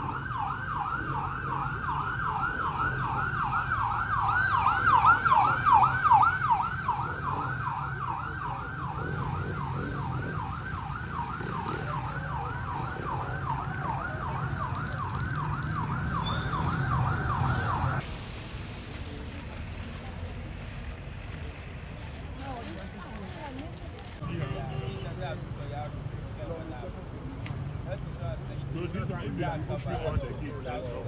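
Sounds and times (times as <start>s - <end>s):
vehicle siren wailing: 0.0s - 18.0s
engine hum: 0.0s - 24.2s.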